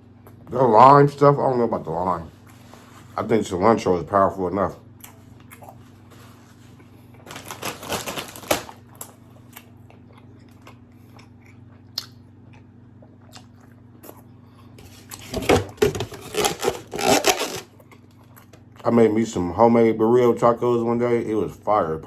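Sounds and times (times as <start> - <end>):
close chewing and crunching: 5.0 - 15.2, 16.2 - 18.9.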